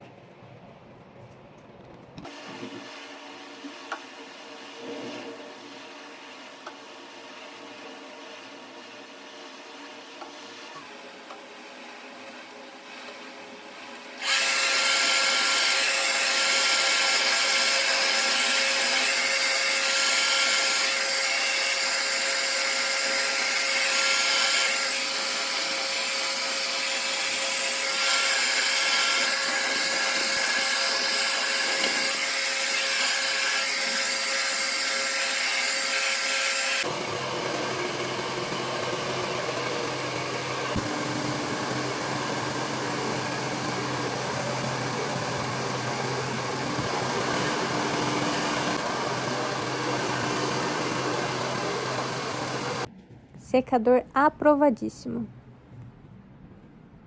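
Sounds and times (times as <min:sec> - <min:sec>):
hair dryer whooshing: 0:14.2 - 0:52.9.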